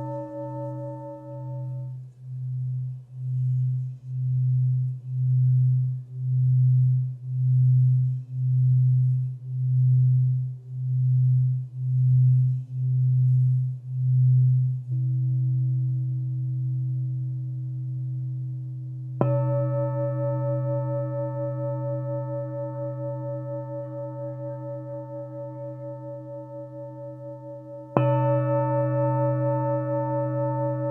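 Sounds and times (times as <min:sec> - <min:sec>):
higher singing bowl struck: 0:00.0 - 0:02.0, 0:19.2 - 0:30.9
singing bowl low pulsing tone: 0:00.0 - 0:30.9.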